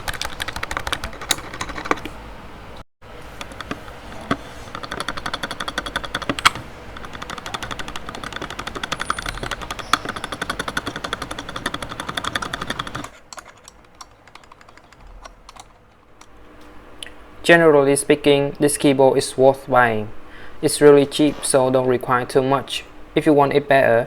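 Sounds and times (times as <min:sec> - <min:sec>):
fast typing on mechanical keyboard: 0:00.0 - 0:02.2, 0:03.2 - 0:16.3.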